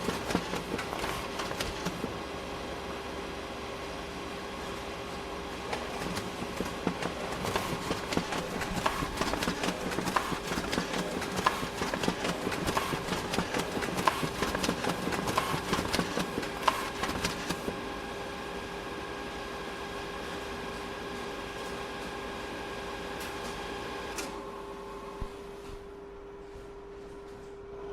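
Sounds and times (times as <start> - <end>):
photocopier fan hum: 0.0 - 27.9.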